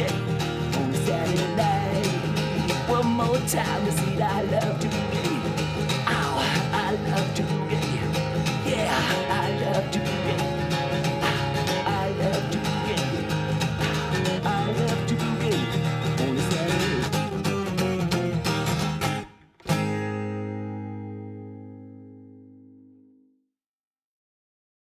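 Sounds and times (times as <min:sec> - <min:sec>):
guitar music: 0:00.0 - 0:23.3
ringing guitar chord: 0:19.8 - 0:23.2.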